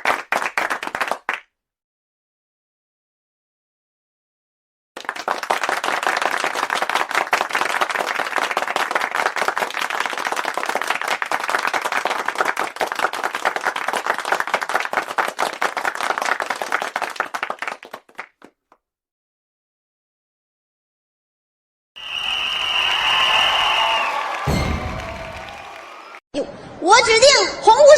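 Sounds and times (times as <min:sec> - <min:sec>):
audience applauding: 0:00.0 - 0:01.4, 0:05.0 - 0:18.5, 0:22.0 - 0:26.2.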